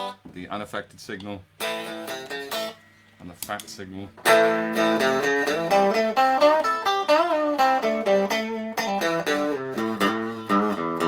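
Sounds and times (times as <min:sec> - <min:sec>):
electric guitar riff: 0:01.6 - 0:03.1, 0:04.2 - 0:11.0.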